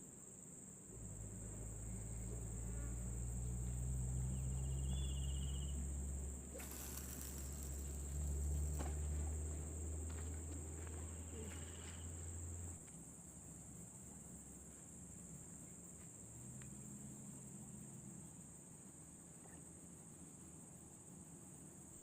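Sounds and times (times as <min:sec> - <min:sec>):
insects chirring: 0:00.0 - 0:22.0
low hum: 0:00.9 - 0:12.8.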